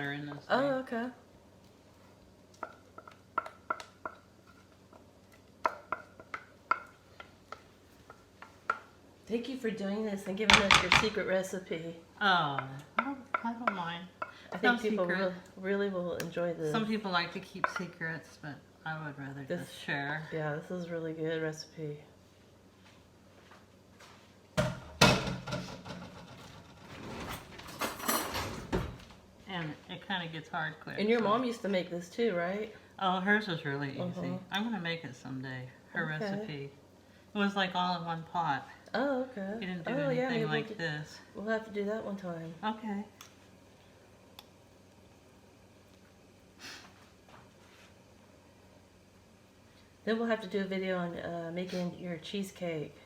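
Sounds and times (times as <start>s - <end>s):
cookware knocking: 10.5s - 11.3s.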